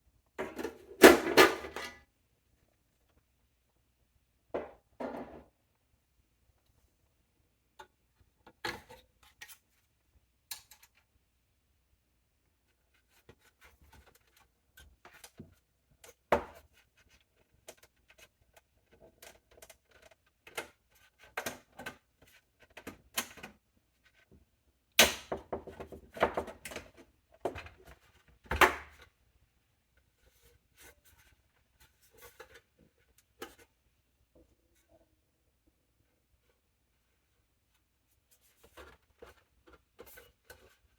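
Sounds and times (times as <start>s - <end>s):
metal and plastic parts clattering: 0.4s - 2.0s.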